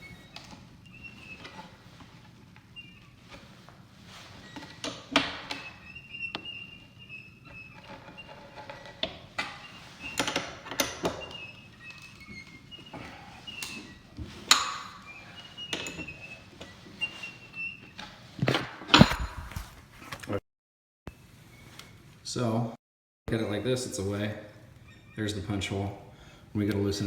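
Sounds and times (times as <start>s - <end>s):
faint high squeaks: 0.0s - 18.4s, 23.5s - 26.1s.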